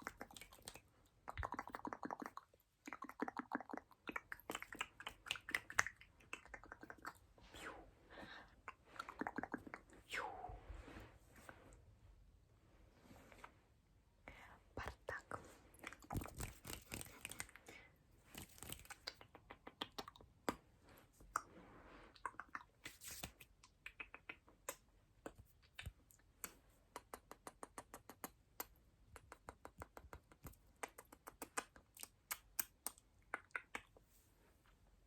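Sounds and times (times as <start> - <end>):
wet mouth clicks and smacks: 0.0 - 7.3, 8.6 - 10.0, 15.8 - 17.6, 18.4 - 20.6, 22.1 - 34.0.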